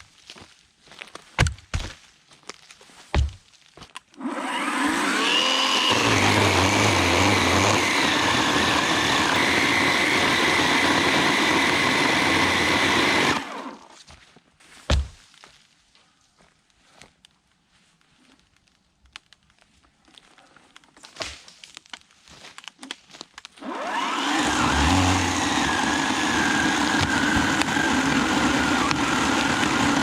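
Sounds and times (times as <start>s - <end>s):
electric chainsaw running: 4.2s - 13.9s, 23.6s - 30.0s.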